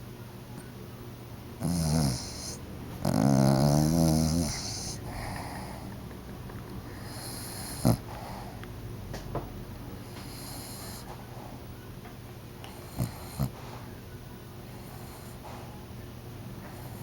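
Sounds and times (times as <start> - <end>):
dog snoring: 1.6 - 6.0, 6.8 - 8.6, 10.0 - 11.1, 12.6 - 13.6, 14.7 - 15.7, 16.7 - 17.0.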